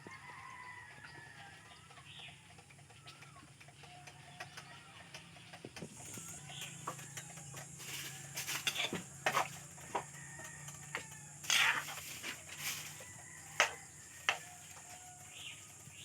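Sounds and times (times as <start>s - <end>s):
sharp clicks and scrapes: 5.2s - 16.0s.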